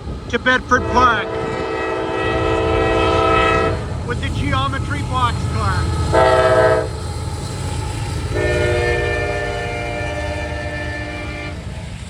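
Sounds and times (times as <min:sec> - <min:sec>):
diesel locomotive rumble: 0:00.0 - 0:12.0
locomotive air horn blasts: 0:00.7 - 0:03.9, 0:06.1 - 0:06.9, 0:08.3 - 0:11.7.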